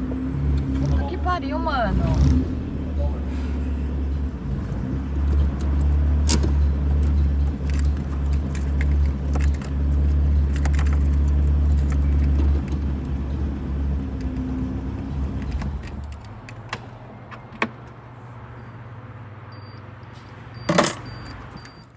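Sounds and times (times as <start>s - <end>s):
car engine running: 0.0s - 16.6s.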